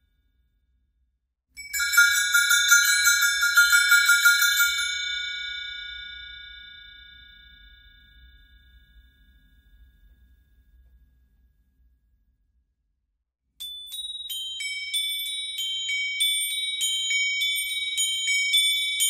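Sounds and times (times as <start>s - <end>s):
metal chimes jangling: 1.7s - 5.7s.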